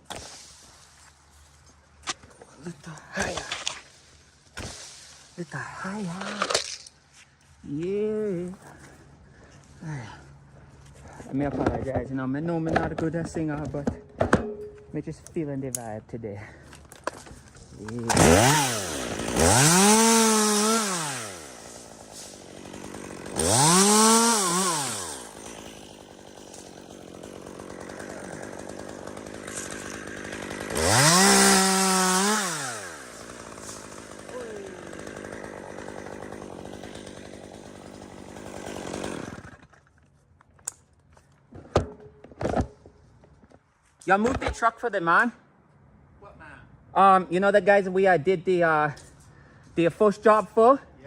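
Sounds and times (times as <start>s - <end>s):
chainsaw revving and idling: 17.7s - 39.8s.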